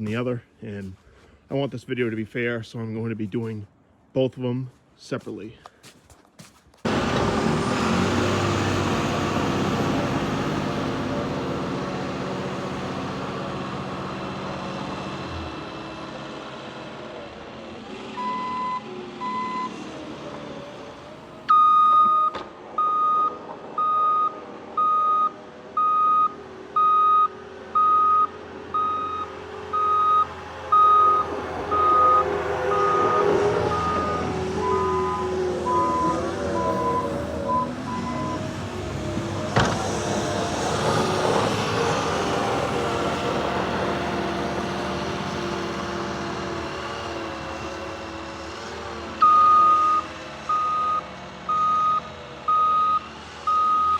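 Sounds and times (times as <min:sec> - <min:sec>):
diesel wheel loader engine: 0:06.8 - 0:53.9
reversing alarm beeping: 0:21.5 - 0:38.4, 0:49.2 - 0:53.9.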